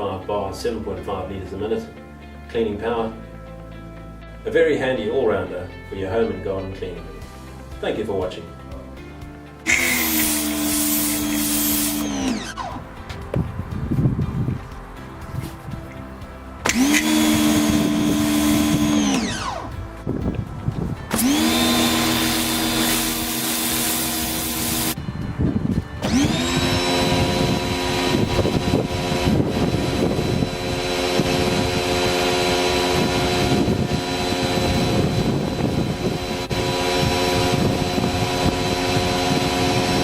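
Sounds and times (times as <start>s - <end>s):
pressure washer motor whining: 9.6s - 13.0s, 16.6s - 20.4s, 21.0s - 25.0s, 26.0s - 40.0s
water spray hissing: 9.7s - 12.8s, 21.1s - 25.0s.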